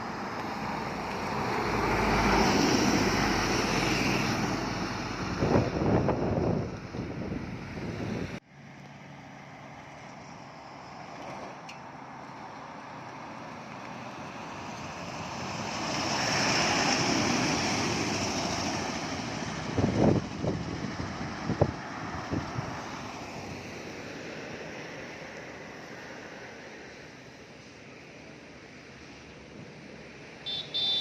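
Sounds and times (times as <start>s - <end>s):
vehicle passing by: 0.0s - 27.4s
loud traffic rumble: 0.0s - 31.0s
wind thumps on microphone: 5.3s - 8.4s.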